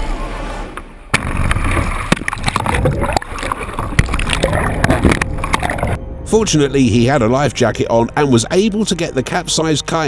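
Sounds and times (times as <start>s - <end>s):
water splashing and gurgling: 1.1s - 6.0s.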